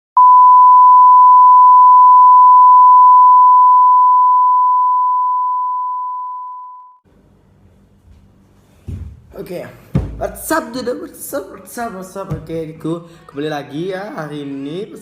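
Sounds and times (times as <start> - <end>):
electronic beep tone: 0.2 - 7.0.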